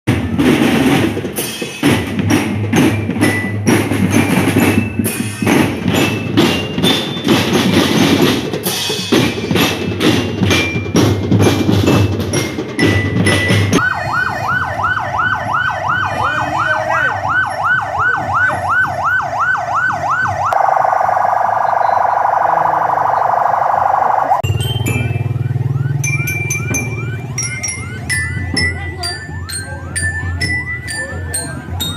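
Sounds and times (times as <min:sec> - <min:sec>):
drum band music: 0:00.1 - 0:20.4, 0:24.3 - 0:31.9
siren yelping: 0:13.8 - 0:31.9
high bell-like notes: 0:24.4 - 0:31.9.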